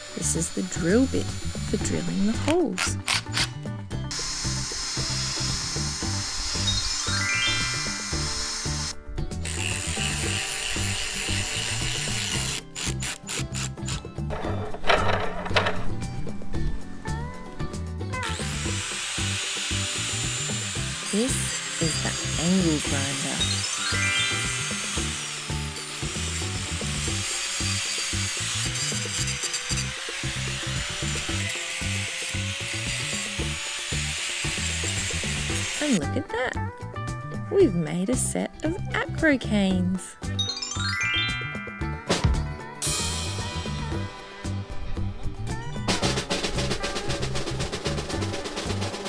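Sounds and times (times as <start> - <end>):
power drill whining: 0.0 - 3.5, 4.1 - 14.8, 18.2 - 36.0
background music: 0.0 - 49.0
music with steady beat: 40.2 - 49.0.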